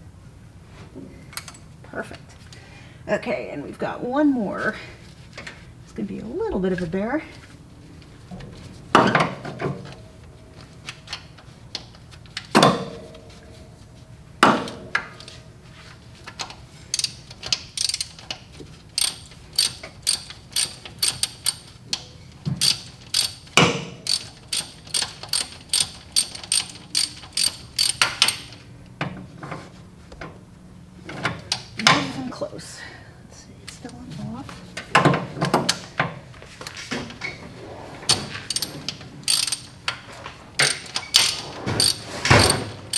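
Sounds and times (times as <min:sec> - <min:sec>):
hand ratchet clicking: 0:17.0 - 0:18.4, 0:19.0 - 0:21.9, 0:22.6 - 0:28.6, 0:38.1 - 0:40.0, 0:40.6 - 0:42.9.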